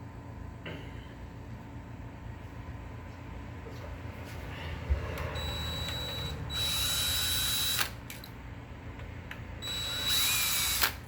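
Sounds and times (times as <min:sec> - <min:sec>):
cordless drill whining: 0:05.4 - 0:08.1, 0:09.6 - 0:11.0
drill sharp click: 0:09.6 - 0:11.0.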